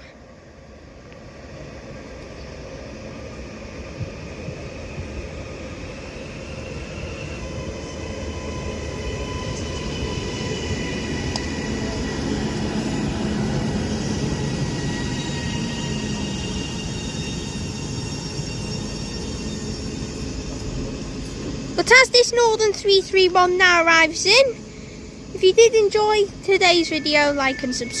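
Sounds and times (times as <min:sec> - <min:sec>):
train rumble: 0:00.0 - 0:28.0
faint high whine: 0:14.5 - 0:28.0.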